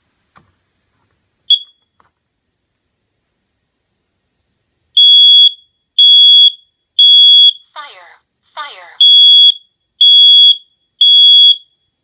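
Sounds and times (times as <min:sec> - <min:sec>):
smoke alarm beeps: 0:01.5 - 0:02.0, 0:05.0 - 0:07.8, 0:09.0 - 0:12.0.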